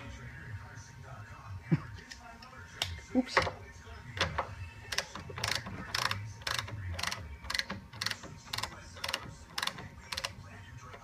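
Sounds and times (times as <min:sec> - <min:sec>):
ratchet wrench clicking: 0:04.2 - 0:10.4.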